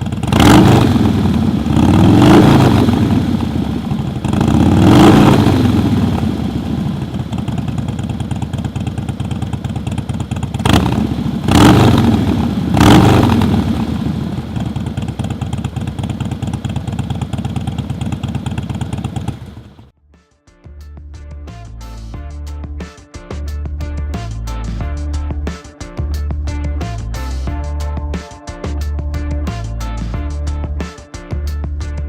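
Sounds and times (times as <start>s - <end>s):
motorcycle engine idling: 0.0s - 19.9s
motorcycle throttle blips: 0.0s - 19.9s.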